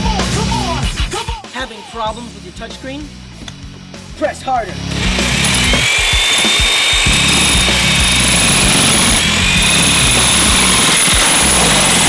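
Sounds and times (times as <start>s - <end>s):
background music: 0.0s - 12.0s
power tool motor whine: 4.8s - 12.0s
loud hissing: 4.9s - 12.0s.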